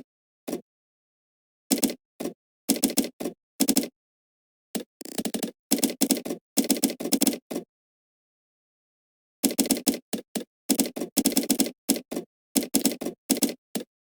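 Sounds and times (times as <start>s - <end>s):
computer keyboard typing: 2.7s - 3.9s, 4.8s - 7.4s, 9.4s - 13.9s.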